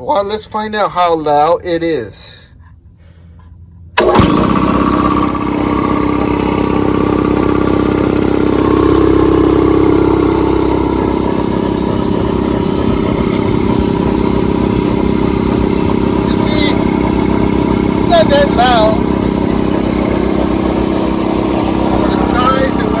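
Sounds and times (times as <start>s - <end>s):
air compressor running: 3.1s - 23.0s.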